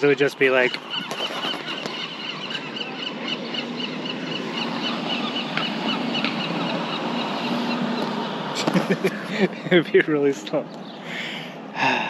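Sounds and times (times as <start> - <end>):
bird chirping rapidly: 0.0 - 9.6
outdoor background noise: 0.0 - 12.0.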